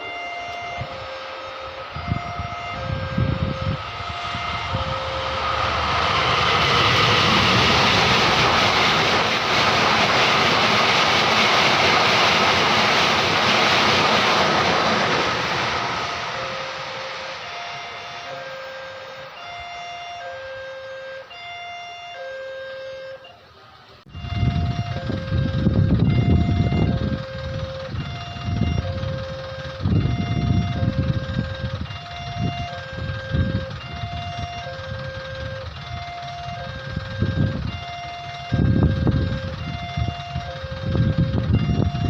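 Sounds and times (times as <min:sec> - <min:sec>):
level crossing two-tone alarm: 0:00.0 - 0:07.7, 0:16.0 - 0:23.5, 0:24.1 - 0:42.0
low rumbling noise: 0:00.0 - 0:20.2, 0:24.0 - 0:42.0.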